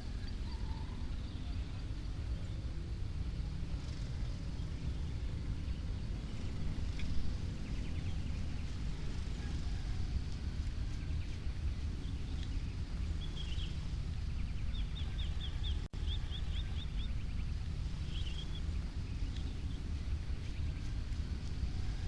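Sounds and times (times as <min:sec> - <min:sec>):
steady low rumble: 0:02.0 - 0:22.0
small birds chirping: 0:10.8 - 0:22.0.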